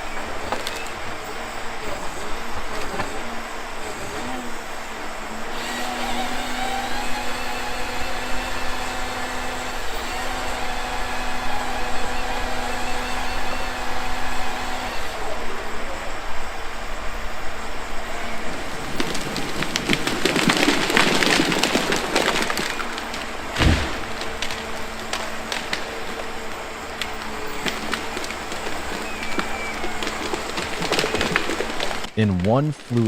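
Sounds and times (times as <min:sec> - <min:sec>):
wood cracking and splintering: 0:00.0 - 0:16.6, 0:18.0 - 0:33.0
forestry harvester running: 0:00.0 - 0:33.0
heavy thud: 0:23.5 - 0:25.0.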